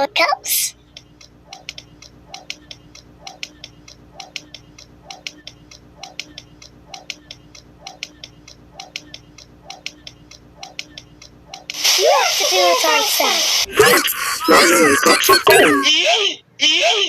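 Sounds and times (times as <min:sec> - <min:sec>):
clock-like ticking: 0:01.2 - 0:11.7.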